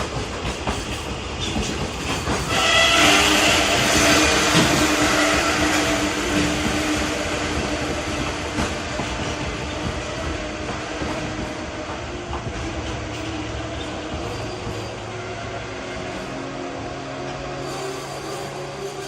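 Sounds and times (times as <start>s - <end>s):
train wheels clicking on rails: 0.0s - 15.1s
electric train rumbling: 0.0s - 19.0s.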